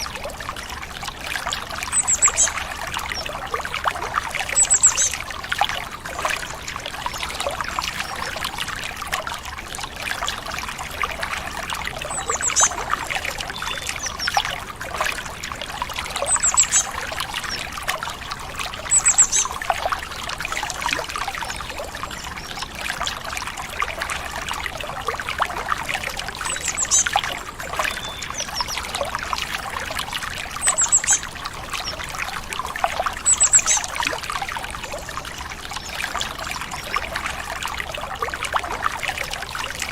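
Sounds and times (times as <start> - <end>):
water babbling over stones: 0.0 - 39.9
bird chirping: 27.9 - 28.8.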